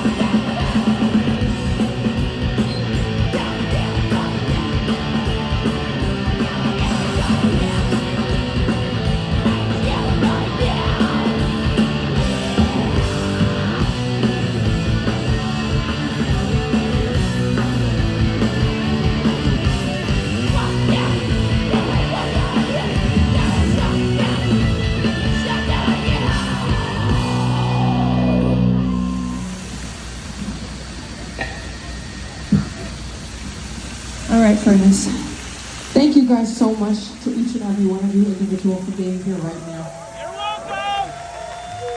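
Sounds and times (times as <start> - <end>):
fast pounding drums: 0.0 - 28.3
yelled vocals: 0.0 - 29.6
heavy band playing live: 0.0 - 31.0
distorted electric guitars: 0.0 - 41.9.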